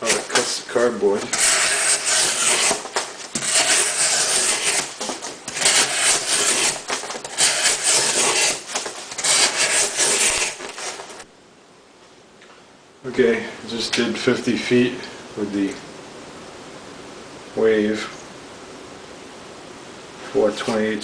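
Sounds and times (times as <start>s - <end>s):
knife slicing cardboard: 1.2s - 11.2s.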